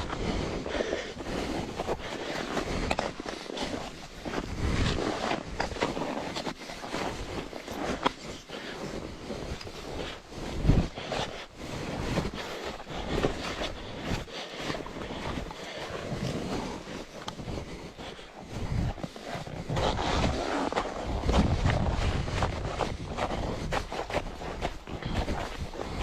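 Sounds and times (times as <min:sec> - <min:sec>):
wind buffeting microphone: 0:21.0 - 0:26.0.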